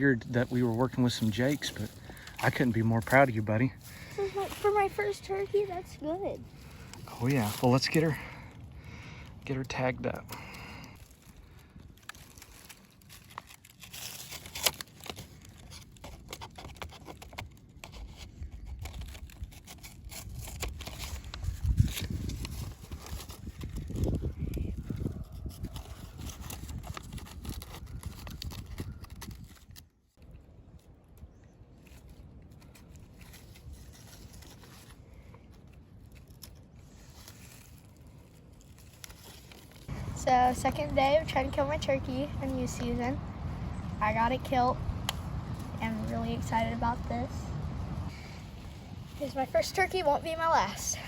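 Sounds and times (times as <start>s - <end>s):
rustling crinkling handling: 0.1s - 24.8s, 25.5s - 43.1s
low rumble: 39.9s - 50.1s.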